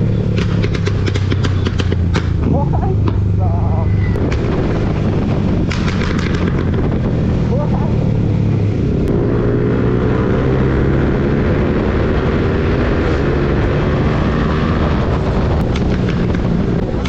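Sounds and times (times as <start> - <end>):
motorcycle engine running: 0.0 - 17.0
exhaust pops: 0.2 - 7.8, 15.0 - 17.0.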